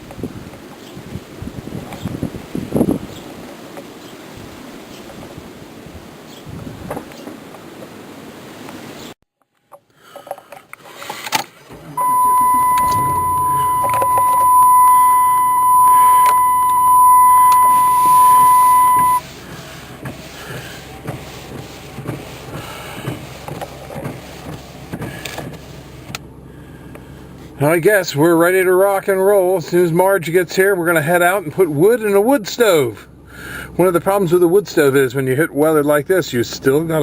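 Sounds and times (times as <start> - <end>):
low engine idle: 11.7 - 23.4, 24.7 - 27.8
dashboard warning buzzer: 12.0 - 19.2.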